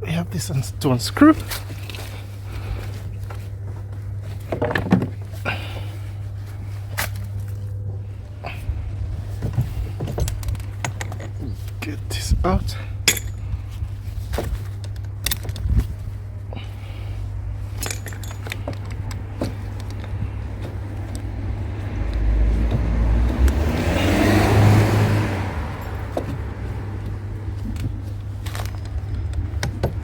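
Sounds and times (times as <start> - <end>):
steady low hum: 0.0 - 30.0
hand tools clinking on metal: 10.0 - 13.6, 17.7 - 20.2
passing vehicle: 18.8 - 30.0.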